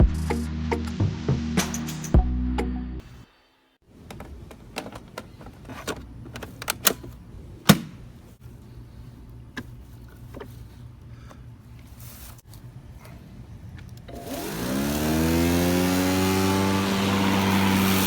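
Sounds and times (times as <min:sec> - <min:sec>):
music: 0:00.0 - 0:03.3
hard parts clicking and knocking: 0:04.0 - 0:08.0.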